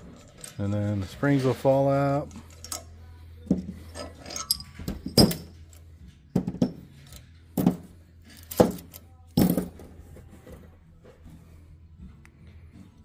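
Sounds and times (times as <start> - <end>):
metal springs clinking: 0.0 - 3.0, 3.7 - 5.9.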